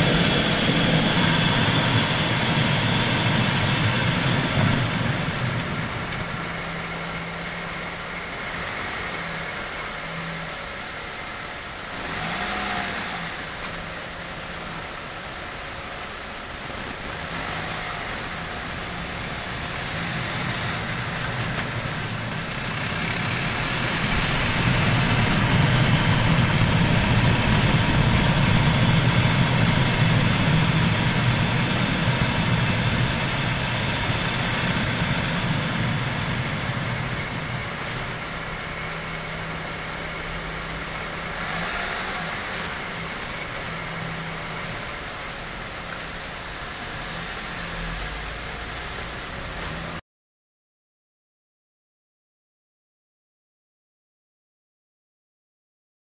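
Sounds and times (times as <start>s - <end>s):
tyre and road noise: 0.0s - 50.0s
hissing swishing brake noise: 35.7s - 45.2s.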